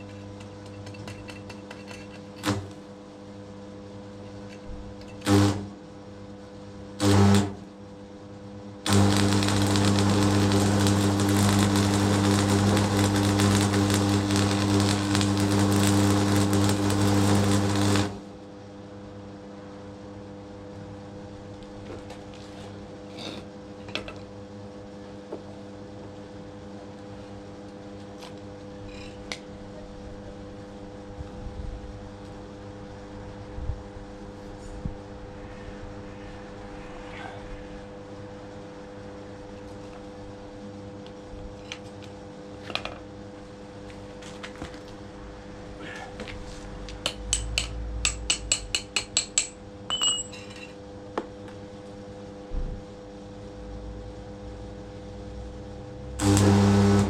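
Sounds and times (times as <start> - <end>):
electric hammer hammering: 5.2 - 5.8, 7.0 - 7.6, 8.9 - 18.3, 56.2 - 57.0.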